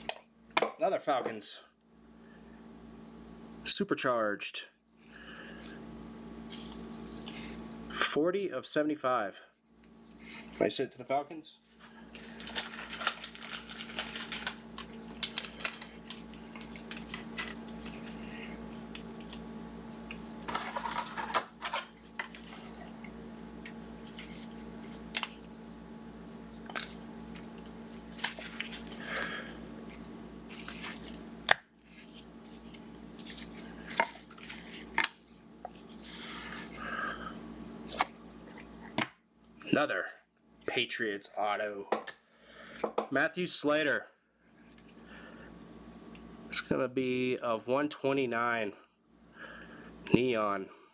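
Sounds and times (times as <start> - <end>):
steady low hum: 0.0 - 50.9
cards rustling and sliding: 12.1 - 19.5, 20.1 - 22.9, 24.0 - 25.8, 26.7 - 36.8.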